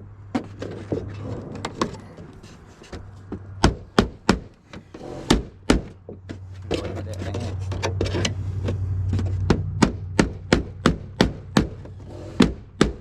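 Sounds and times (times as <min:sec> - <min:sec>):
hammer striking nails: 0:03.6 - 0:04.6, 0:05.2 - 0:06.2, 0:09.2 - 0:13.0.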